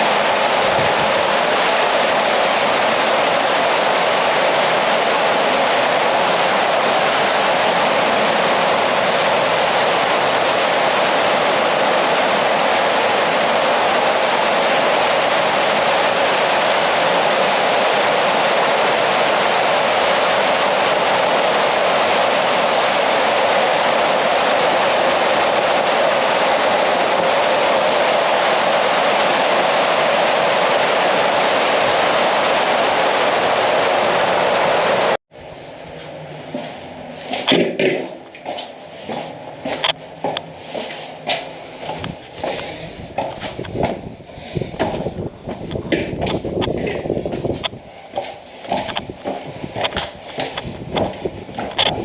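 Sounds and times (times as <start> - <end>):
waterfall roaring: 0.0 - 35.2, 36.4 - 52.0
sharp knocks or steps: 37.3 - 44.1, 44.8 - 52.0.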